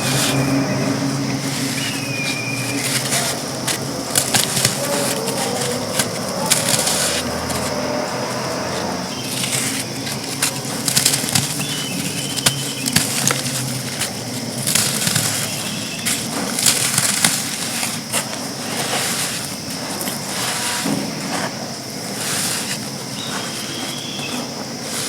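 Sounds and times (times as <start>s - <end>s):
pressed sand crunching: 0.0s - 25.0s.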